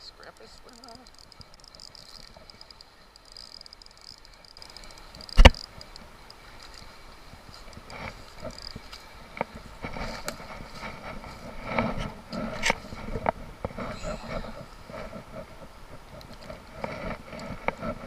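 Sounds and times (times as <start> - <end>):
high insect chirring: 0.0 - 9.1.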